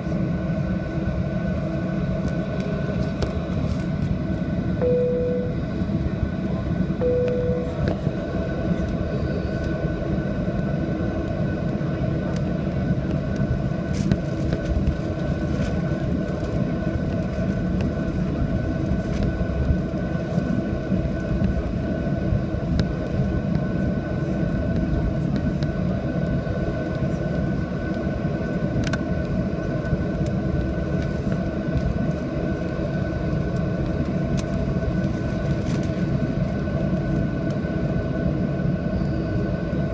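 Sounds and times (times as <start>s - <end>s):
constant whine: 0.0s - 39.9s
jet engine cabin rumble: 0.0s - 39.9s
short single-pitch tone: 4.8s - 5.7s, 7.0s - 8.0s.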